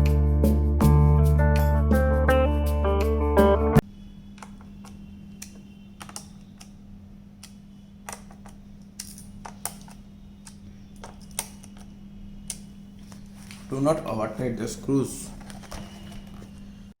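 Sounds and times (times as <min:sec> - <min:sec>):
guitar music: 0:00.0 - 0:03.8.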